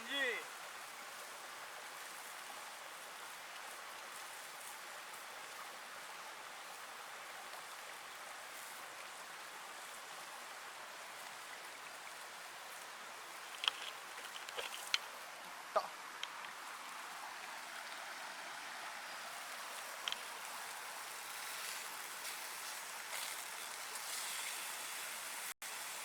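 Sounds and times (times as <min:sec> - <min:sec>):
steak sizzling: 0:19.0 - 0:26.0.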